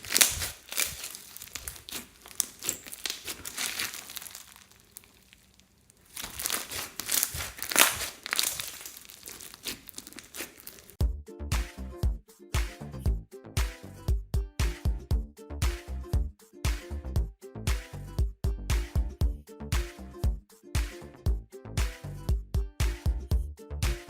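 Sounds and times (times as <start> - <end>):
slime crackling and popping: 0.0 - 11.0
upbeat funk disco music: 11.0 - 24.0.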